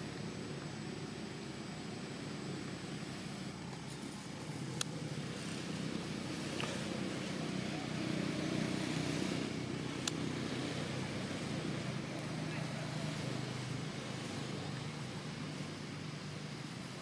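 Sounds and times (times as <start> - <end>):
vehicle engine rumble: 0.0 - 17.0.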